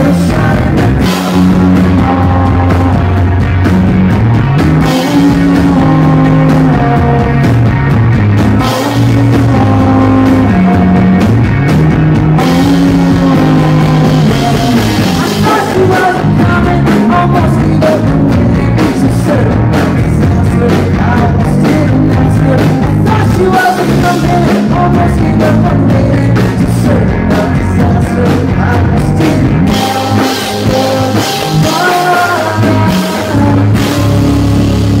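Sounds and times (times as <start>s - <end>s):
person singing: 0.0s - 3.4s, 4.8s - 7.6s, 8.6s - 11.2s, 12.4s - 35.0s
rock band playing live: 0.0s - 35.0s.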